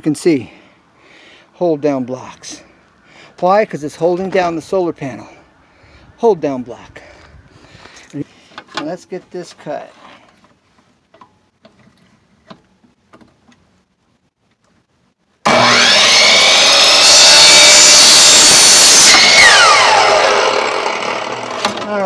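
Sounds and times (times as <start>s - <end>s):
electric saw cutting wood: 15.4s - 21.9s.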